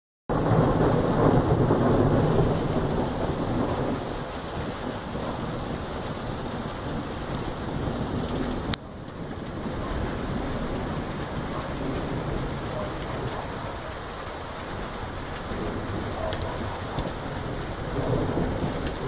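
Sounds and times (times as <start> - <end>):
rolling thunder rumbling: 0.3 - 19.0.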